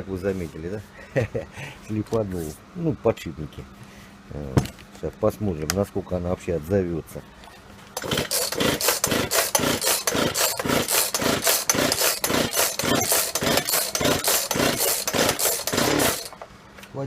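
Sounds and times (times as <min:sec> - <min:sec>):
chainsaw starter cord rasping: 0:08.0 - 0:16.4
engine turning over: 0:08.0 - 0:16.4.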